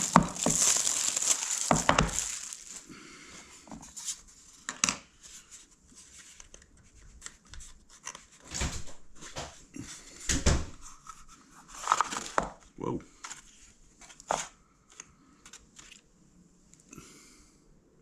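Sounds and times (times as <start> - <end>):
tape and cardboard tearing: 0.0 - 2.8
packing material rustling: 0.0 - 3.0.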